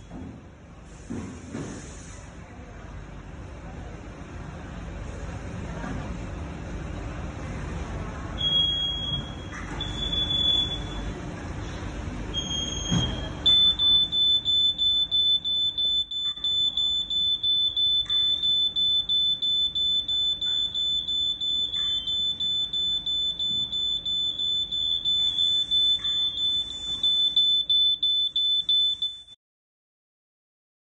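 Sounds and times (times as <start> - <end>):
smoke alarm beeping: 8.4 - 11.1, 12.3 - 29.4.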